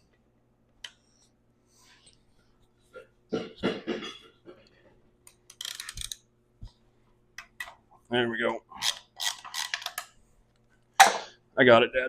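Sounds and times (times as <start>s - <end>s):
person clearing throat: 3.0s - 4.4s.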